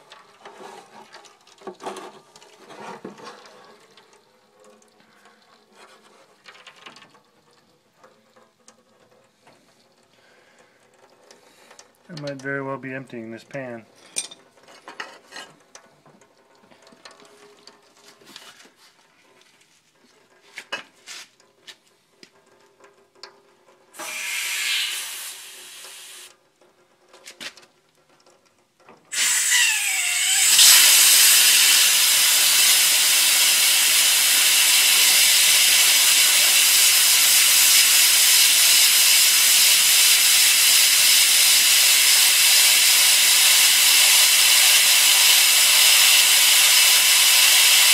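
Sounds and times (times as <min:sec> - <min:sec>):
compressed air and water hissing: 0:24.0 - 0:26.3, 0:29.1 - 0:47.9.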